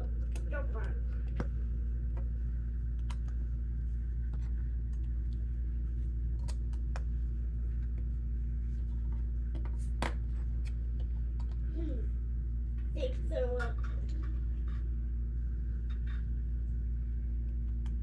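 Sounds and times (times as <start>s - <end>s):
low hum: 0.0s - 18.0s.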